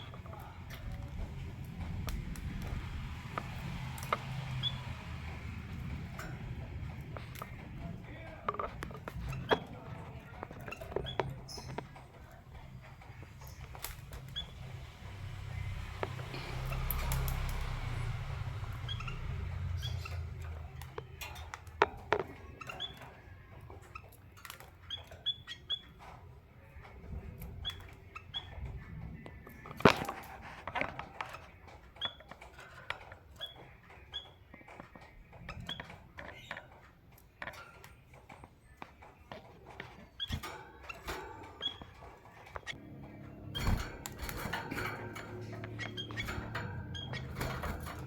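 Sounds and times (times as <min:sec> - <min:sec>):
birds tapping on perches and wire: 0:00.0 - 0:48.0.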